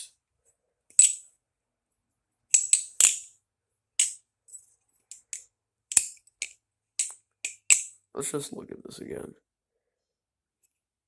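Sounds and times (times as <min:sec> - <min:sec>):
butterfly knife clacking: 0:02.5 - 0:03.3, 0:05.1 - 0:08.0.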